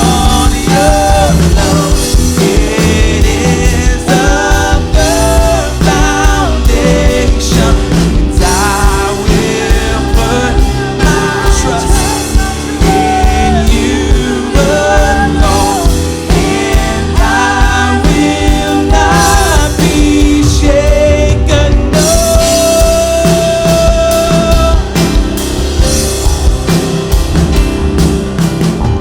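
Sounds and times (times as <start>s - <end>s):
person singing: 0.0s - 26.8s
bass guitar: 0.0s - 29.0s
drums: 0.0s - 29.0s
piano: 0.0s - 29.0s
worship band playing: 0.0s - 29.0s.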